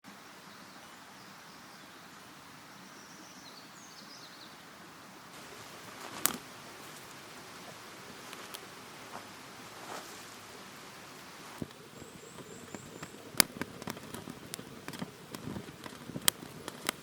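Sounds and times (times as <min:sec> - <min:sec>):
steady hiss: 0:00.0 - 0:17.0
faint bird chirps: 0:00.3 - 0:04.7, 0:11.9 - 0:13.3.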